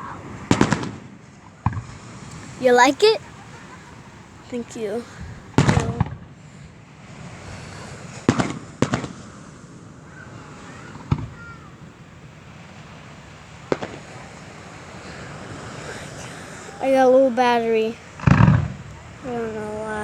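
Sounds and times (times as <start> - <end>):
steady background hiss: 2.3 - 6.0.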